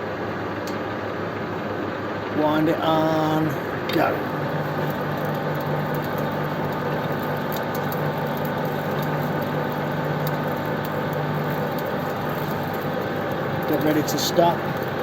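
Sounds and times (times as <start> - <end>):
lathe running with faint whine: 0.0 - 15.0.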